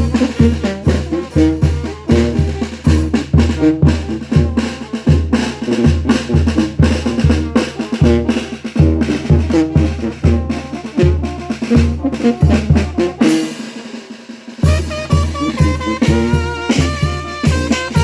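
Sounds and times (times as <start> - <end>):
brass band playing: 0.0 - 18.0.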